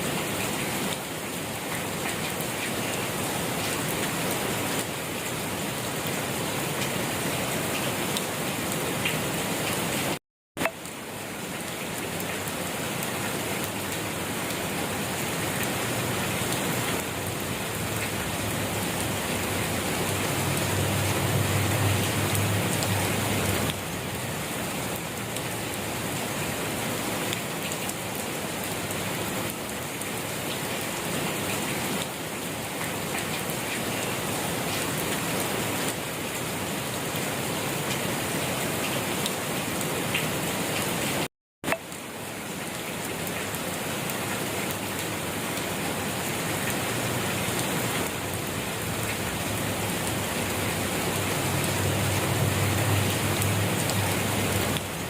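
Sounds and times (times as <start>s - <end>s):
rain pattering: 0.0s - 55.0s.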